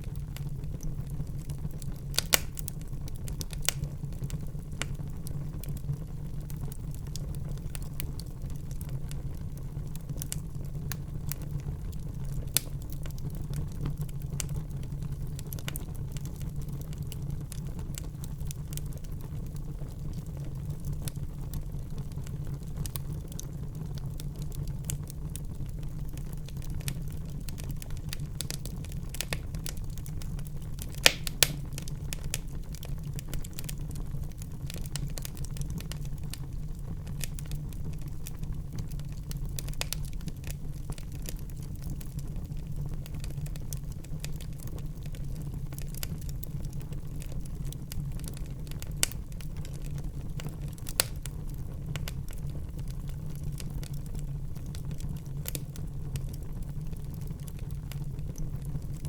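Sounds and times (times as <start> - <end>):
fire crackling and popping: 0.0 - 59.0
fire flames rushing: 30.7 - 33.9.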